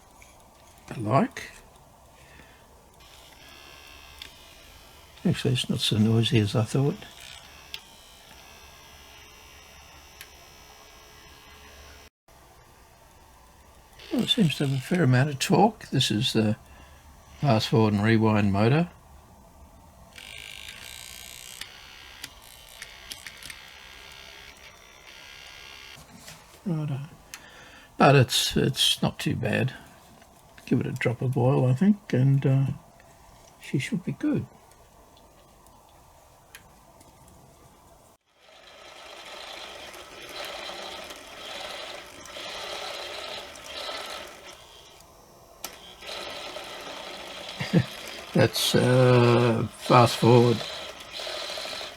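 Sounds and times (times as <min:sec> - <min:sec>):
cassette deck motor whirring: 0:02.9 - 0:12.1, 0:12.8 - 0:18.8, 0:20.1 - 0:26.1, 0:38.4 - 0:51.9
sharp clicks: 0:04.1 - 0:04.5, 0:06.9 - 0:08.5, 0:39.8 - 0:51.9.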